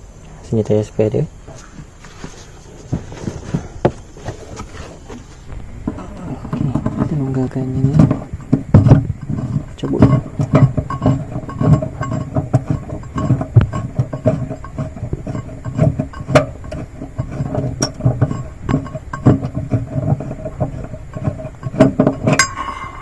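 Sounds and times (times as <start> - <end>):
metallic clinks and knocks: 7.9 - 23.0.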